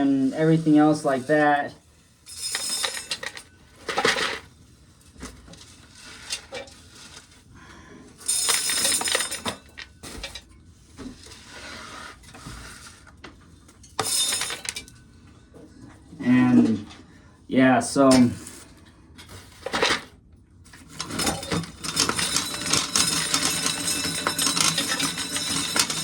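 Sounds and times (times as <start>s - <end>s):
corn kernels rattling into a pail: 2.4s - 4.5s, 21.0s - 26.0s.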